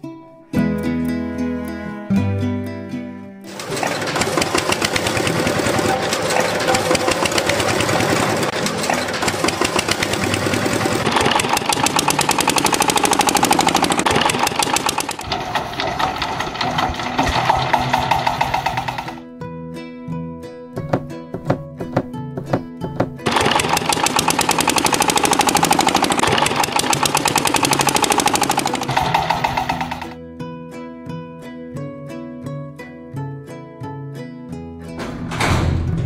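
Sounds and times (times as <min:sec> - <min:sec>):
guitar music: 0:00.0 - 0:13.1, 0:16.5 - 0:25.0, 0:29.2 - 0:35.0
small motor rattling buzz: 0:03.5 - 0:19.2, 0:23.3 - 0:30.2.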